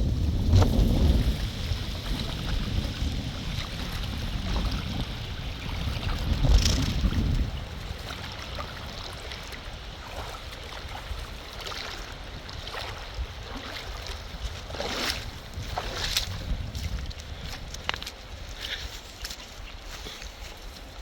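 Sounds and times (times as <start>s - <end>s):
wind rushing: 0.0s - 7.8s
water sloshing: 0.5s - 21.0s
swishing splashes: 0.8s - 17.0s.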